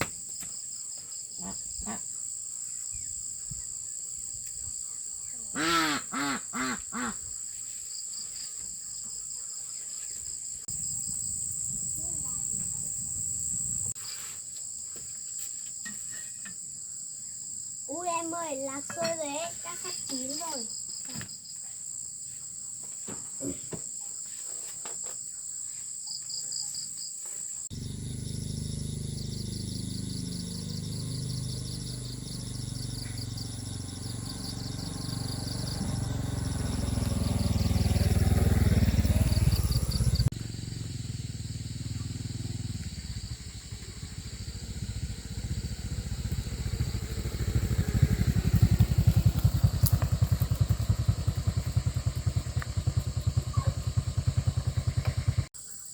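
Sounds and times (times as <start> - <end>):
insects chirping: 0.0 - 55.9
small engine running: 27.7 - 55.5.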